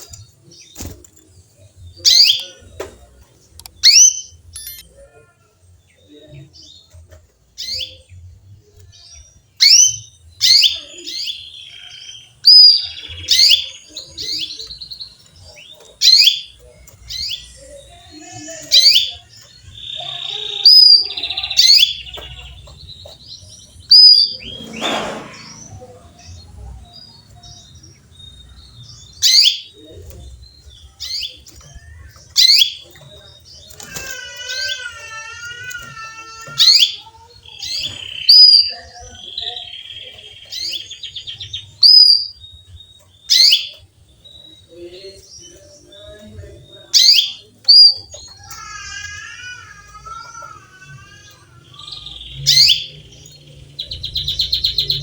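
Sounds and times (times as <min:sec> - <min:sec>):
canary chirping and trilling: 0:00.0 - 0:55.0
loud rough sound: 0:24.2 - 0:26.3.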